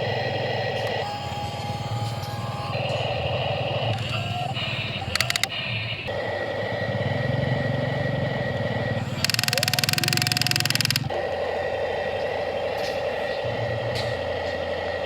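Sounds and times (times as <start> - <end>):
electric motors whirring: 0.0 - 11.7
harsh rapid buzz: 0.0 - 11.7.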